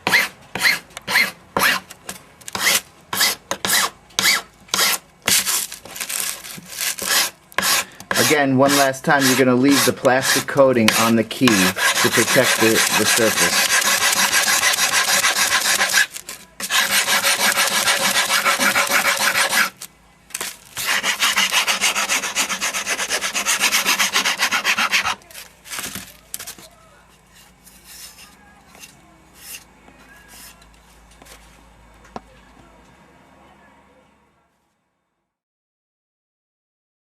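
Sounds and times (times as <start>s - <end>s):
hand file rasping on plastic: 0.0s - 1.9s, 2.5s - 5.6s, 6.4s - 19.8s, 20.8s - 25.2s.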